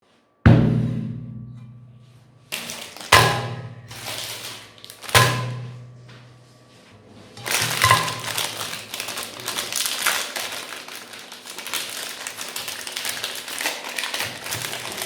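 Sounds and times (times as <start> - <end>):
heavy booming music hits: 0.5 - 2.4.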